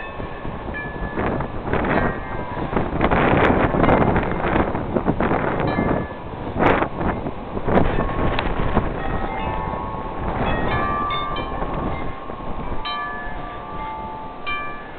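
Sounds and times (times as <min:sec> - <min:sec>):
wind buffeting microphone: 0:00.0 - 0:14.9
clear ringing notes: 0:07.9 - 0:14.9.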